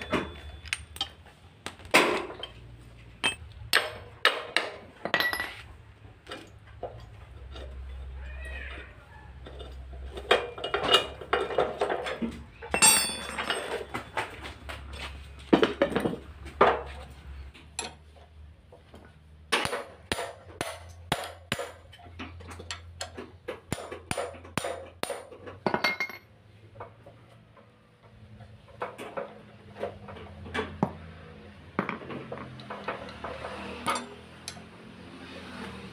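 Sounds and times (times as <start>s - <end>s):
metal tools clinking: 0.0s - 1.3s, 2.0s - 4.1s, 5.0s - 8.8s, 9.4s - 15.0s, 25.6s - 26.3s, 32.6s - 34.7s.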